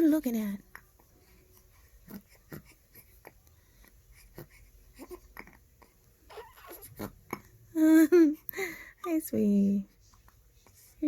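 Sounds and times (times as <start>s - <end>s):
baby breathing: 1.2s - 6.0s
baby hiccuping: 6.3s - 7.1s.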